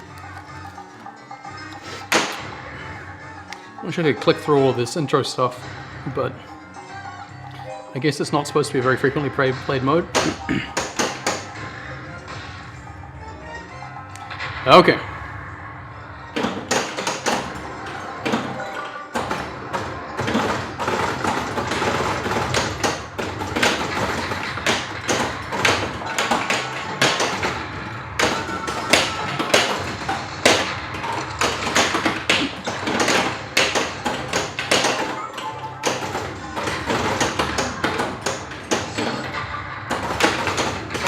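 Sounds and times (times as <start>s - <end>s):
pinball machine music: 0.0s - 41.0s
pinball clacks and thuds: 2.0s - 2.7s, 8.8s - 13.1s, 16.3s - 41.0s.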